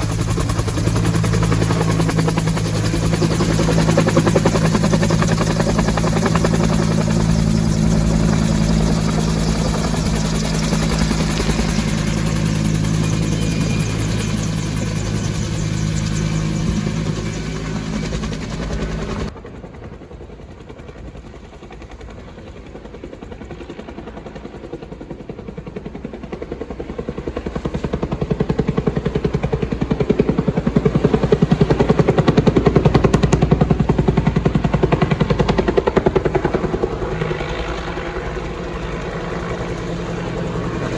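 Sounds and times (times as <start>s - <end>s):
helicopter rapid rotor beat: 0.0s - 40.9s
helicopter turbine and rotor: 0.0s - 40.9s.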